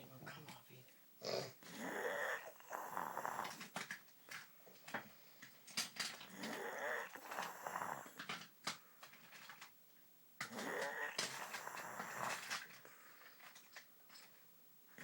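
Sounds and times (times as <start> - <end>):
quiet breathing: 0.5 - 9.7, 10.4 - 15.0
person snoring: 1.2 - 3.7, 6.3 - 8.2, 10.4 - 12.8.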